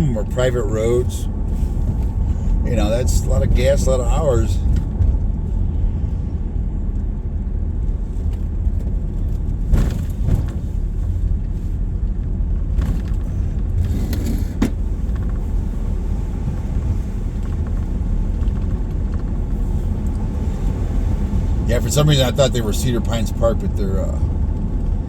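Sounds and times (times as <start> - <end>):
vehicle engine and road rumble: 0.0 - 25.0.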